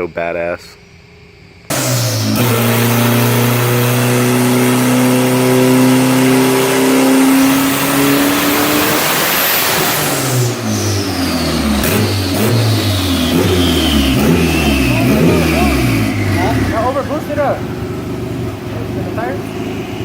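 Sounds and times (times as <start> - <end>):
car engine revving: 1.7 - 20.0.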